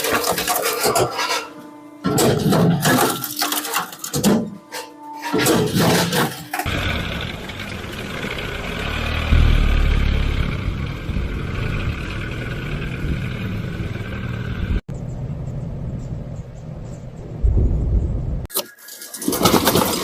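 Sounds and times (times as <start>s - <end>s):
road noise: 6.0s - 18.5s
vehicle engine rumble: 6.6s - 18.5s.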